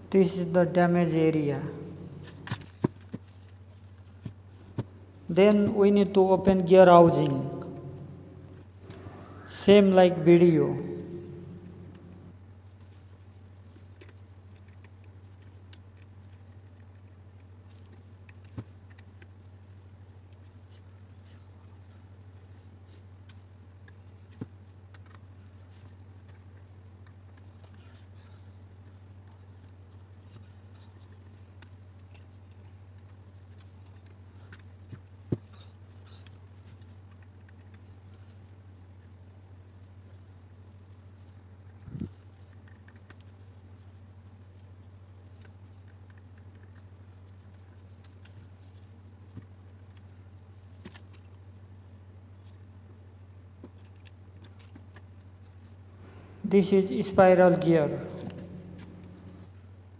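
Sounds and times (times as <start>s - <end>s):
steady low hum: 0.0s - 2.8s, 4.6s - 12.4s, 55.9s - 59.6s.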